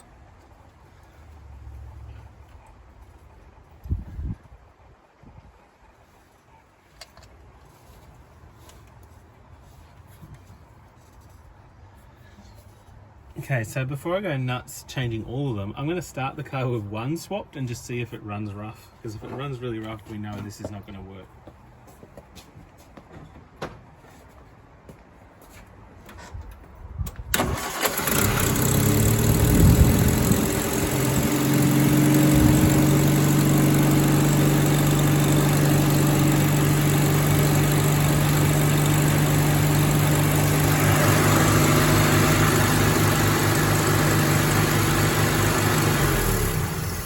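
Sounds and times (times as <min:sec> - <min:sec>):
starter cranking engine: 0:27.3 - 0:47.0
car engine idling: 0:27.5 - 0:47.0.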